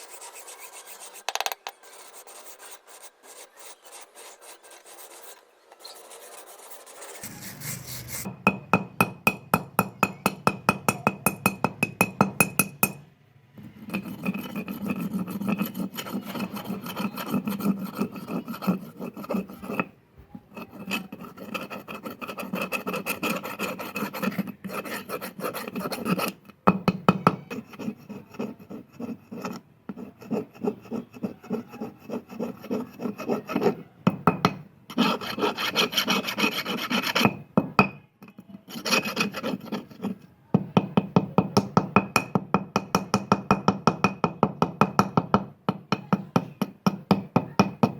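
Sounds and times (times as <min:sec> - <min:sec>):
steel file rasping: 0:00.0 - 0:08.3, 0:13.8 - 0:19.9, 0:20.6 - 0:26.4, 0:34.9 - 0:37.4, 0:38.7 - 0:40.2.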